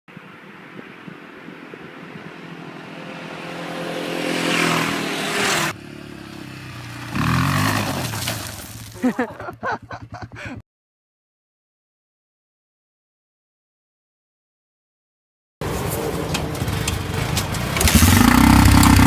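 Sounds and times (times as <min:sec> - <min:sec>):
motorcycle engine revving: 0:01.0 - 0:10.6, 0:15.6 - 0:19.0.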